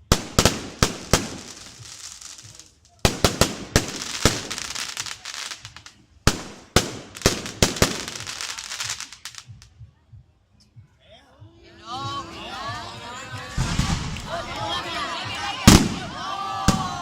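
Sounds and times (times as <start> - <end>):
fireworks bangs: 0.0 - 9.6, 13.5 - 17.0
fireworks crackling: 0.0 - 9.8, 13.3 - 17.0.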